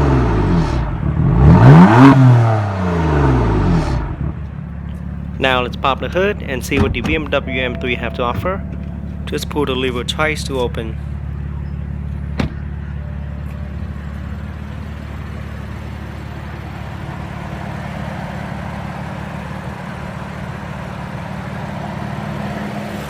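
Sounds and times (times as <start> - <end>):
car engine idling: 4.9 - 21.6.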